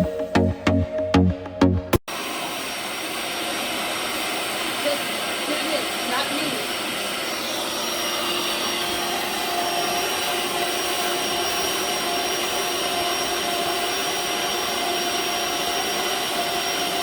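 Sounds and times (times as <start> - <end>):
cordless vacuum cleaner running: 2.1 - 17.0.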